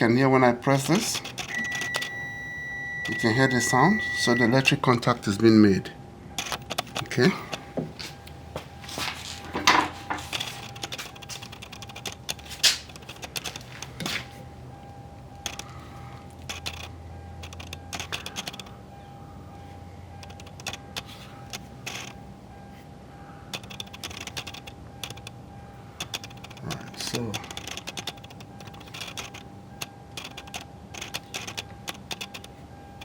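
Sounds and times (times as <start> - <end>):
faint steady hum: 0.0 - 33.0
plastic and metal parts clicking: 0.8 - 2.1, 6.4 - 7.6, 9.6 - 14.3, 15.4 - 18.7, 20.2 - 22.2, 23.5 - 25.4, 26.0 - 32.6.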